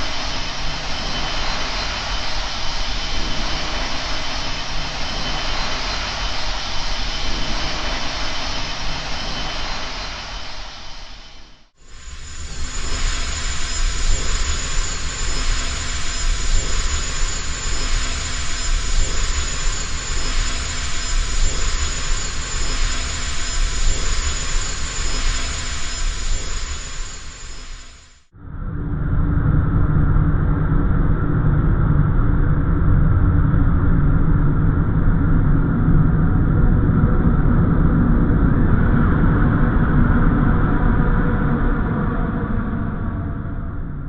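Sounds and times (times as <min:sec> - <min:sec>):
loud rush of noise: 0:00.0 - 0:28.3
deep rumble: 0:00.0 - 0:44.0.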